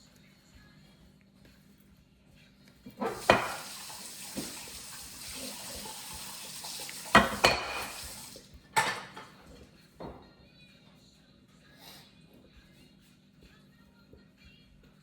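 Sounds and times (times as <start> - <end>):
dishes and utensils clattering: 2.9 - 10.2
tap running into sink: 3.0 - 9.3.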